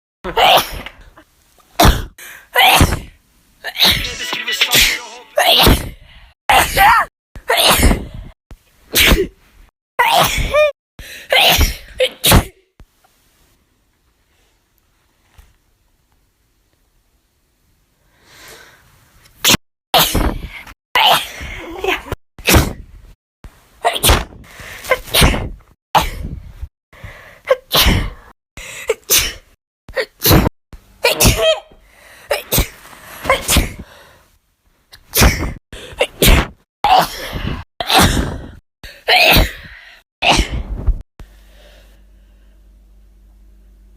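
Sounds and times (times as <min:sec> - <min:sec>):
woman sneezing: 0:00.3 - 0:00.9, 0:03.7 - 0:08.1, 0:08.9 - 0:09.3, 0:11.3 - 0:12.6, 0:24.8 - 0:26.3, 0:27.5 - 0:28.2, 0:28.9 - 0:29.4, 0:30.0 - 0:33.8, 0:39.1 - 0:39.6.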